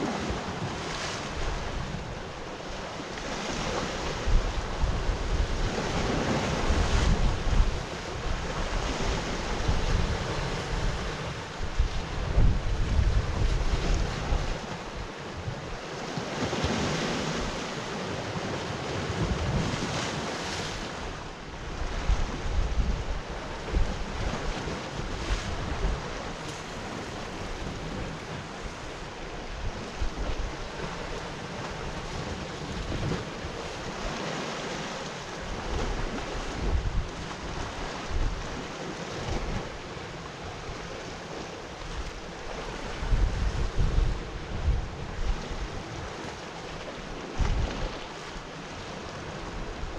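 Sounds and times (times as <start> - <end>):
sea waves washing in: 0.0 - 49.9
wind buffeting microphone: 3.5 - 15.8, 20.9 - 34.1, 35.4 - 38.6, 41.8 - 46.2, 47.2 - 48.1.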